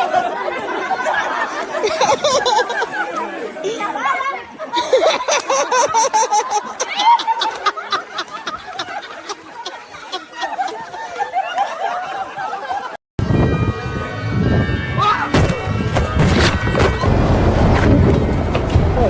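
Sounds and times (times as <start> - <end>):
person laughing: 0.0 - 3.8, 4.7 - 12.3.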